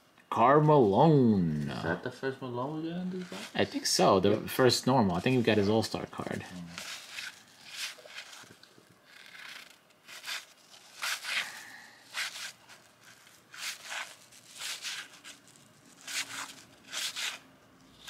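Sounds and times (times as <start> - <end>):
trading cards flipped through: 6.7 - 18.0.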